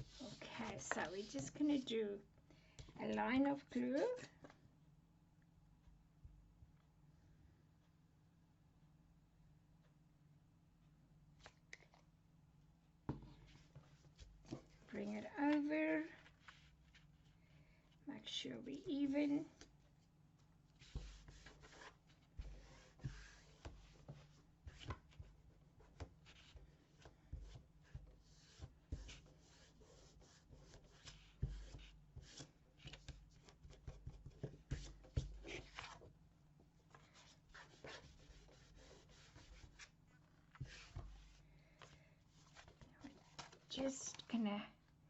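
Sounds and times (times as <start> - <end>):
hands rubbing paper: 0.0 - 1.6.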